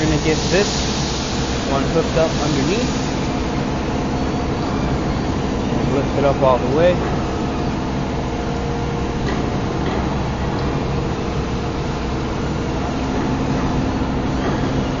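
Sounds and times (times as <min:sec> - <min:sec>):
electric crane hoist humming: 0:00.0 - 0:15.0.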